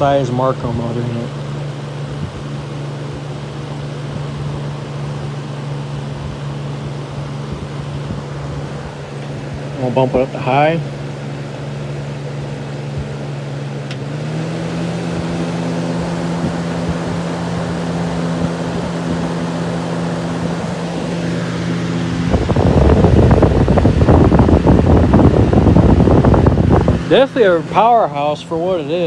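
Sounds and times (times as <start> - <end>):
box fan motor hum: 0.0 - 29.0
wind buffeting microphone: 15.1 - 28.8.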